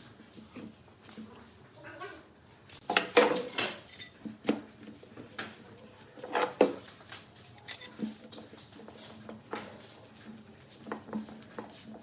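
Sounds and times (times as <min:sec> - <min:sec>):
hard objects clinking together: 0:06.2 - 0:09.8.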